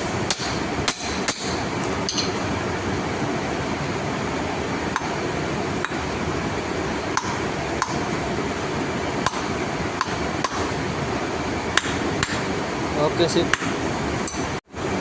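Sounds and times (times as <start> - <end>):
steady background noise: 0.0 - 15.0
hammer tapping metal: 0.3 - 2.4, 7.2 - 8.0, 9.2 - 10.7, 11.8 - 12.5.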